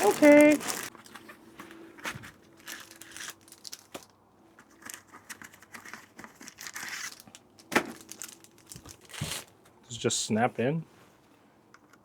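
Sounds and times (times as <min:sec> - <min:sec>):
plastic and paper crinkling: 0:00.0 - 0:09.6
light clicks of parts: 0:11.6 - 0:12.0.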